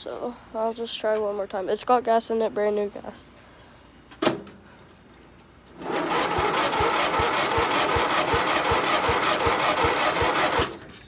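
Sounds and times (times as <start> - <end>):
lawnmower engine cranking: 5.8 - 11.0.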